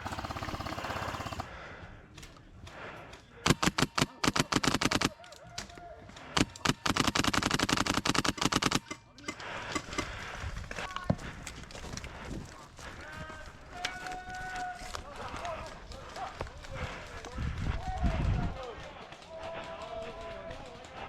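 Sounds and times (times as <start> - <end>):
airsoft gun firing bursts: 0.0 - 1.5, 3.4 - 5.2, 6.3 - 9.0.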